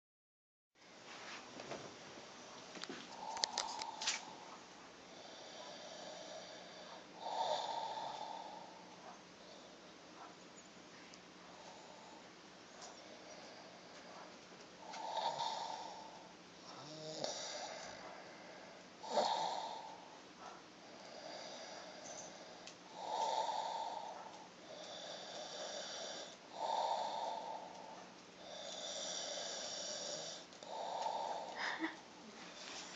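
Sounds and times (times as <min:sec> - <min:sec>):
person snoring: 0:03.1 - 0:04.5, 0:05.1 - 0:08.9, 0:14.8 - 0:20.2, 0:20.9 - 0:32.0.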